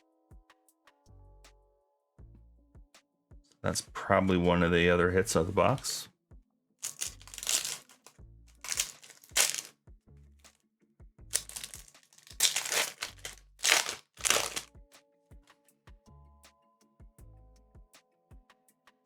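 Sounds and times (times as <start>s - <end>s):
foil wrapper crinkling: 6.8s - 9.7s, 11.3s - 14.7s.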